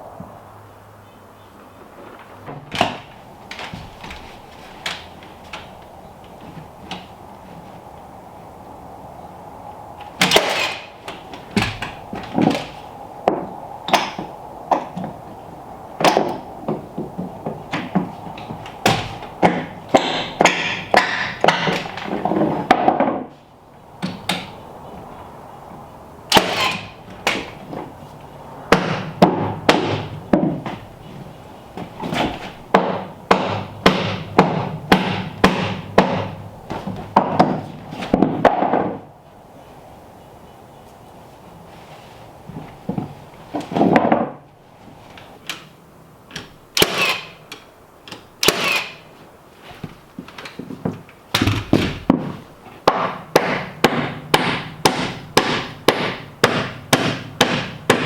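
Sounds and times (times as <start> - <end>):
hammer knocking on timber: 32.7 - 36.4, 52.9 - 58.0.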